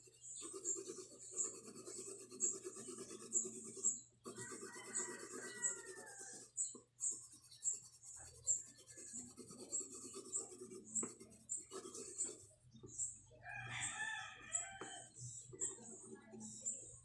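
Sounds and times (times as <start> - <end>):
scratching and rubbing on paper: 0.0 - 12.6
rooster crowing: 4.4 - 6.4, 13.4 - 15.1.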